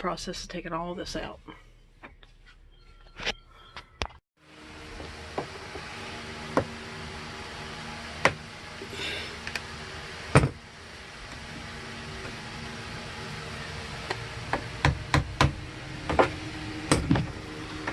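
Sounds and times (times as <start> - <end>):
steady background hum: 0.0 - 17.9
hand tools knocking on wood: 14.5 - 17.3.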